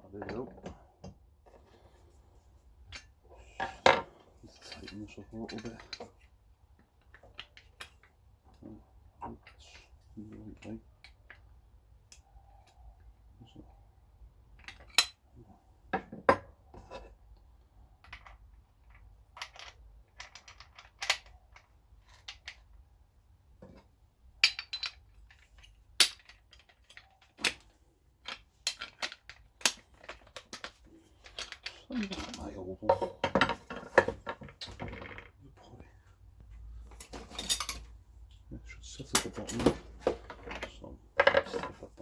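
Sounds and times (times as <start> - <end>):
metallic clicks and clanks of tools: 2.9 - 6.2, 14.6 - 15.2, 24.4 - 35.3, 36.8 - 38.0, 39.0 - 42.0.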